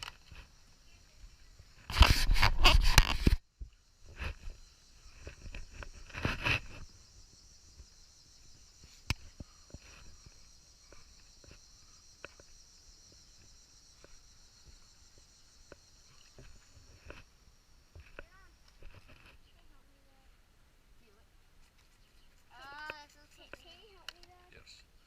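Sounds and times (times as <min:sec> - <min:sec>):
insects chirping: 0:00.0 - 0:25.0
rustle: 0:00.0 - 0:25.0.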